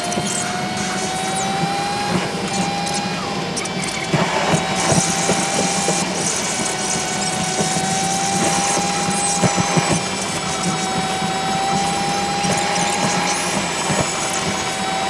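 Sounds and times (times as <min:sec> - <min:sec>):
machine whining: 0:00.0 - 0:15.0.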